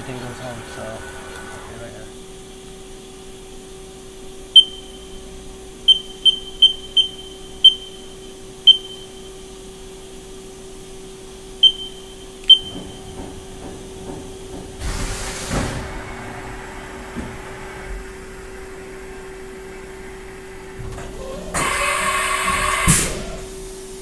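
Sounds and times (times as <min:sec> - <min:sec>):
machine hum: 0:00.0 - 0:02.6, 0:11.2 - 0:24.0.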